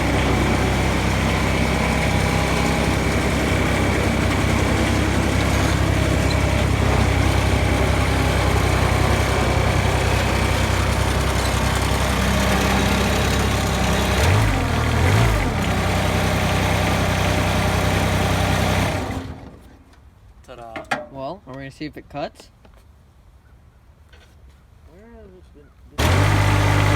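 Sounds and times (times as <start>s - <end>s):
diesel engine idling: 0.0s - 19.6s, 26.0s - 26.9s
engine revving: 0.0s - 19.6s, 26.0s - 26.9s.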